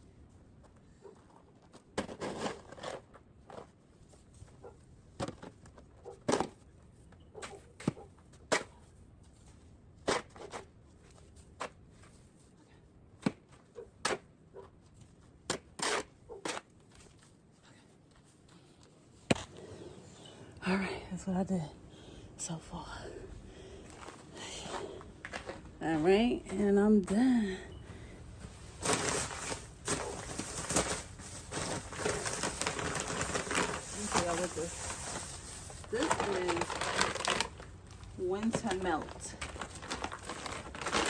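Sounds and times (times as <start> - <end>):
snow shovel scraping snow: 33.6 - 36.5.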